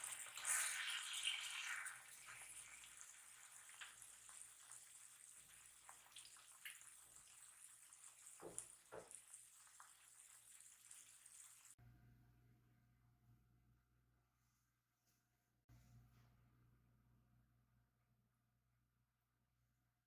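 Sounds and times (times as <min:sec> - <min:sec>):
kitchen tap water running: 0:00.0 - 0:11.8
small clicks and drips: 0:00.0 - 0:11.8.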